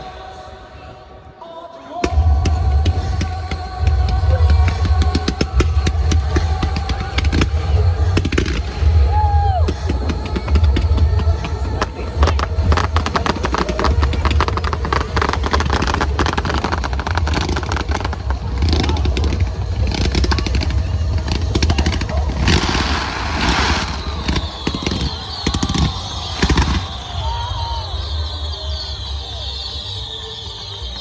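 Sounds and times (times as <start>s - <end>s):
fireworks crackling: 19.8s - 28.3s
hissing crackle: 21.5s - 27.5s.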